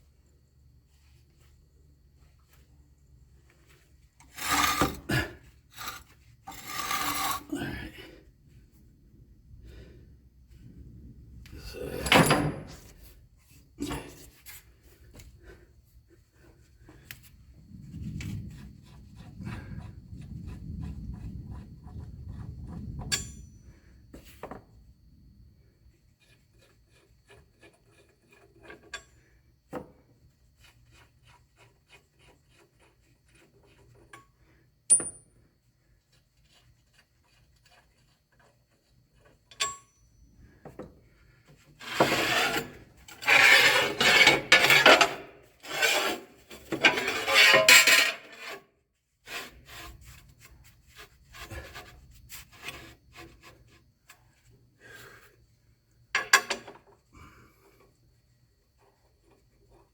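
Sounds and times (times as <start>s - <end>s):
tools scraping and rubbing: 3.7s - 7.7s, 12.6s - 15.3s, 26.2s - 29.3s, 41.2s - 48.6s.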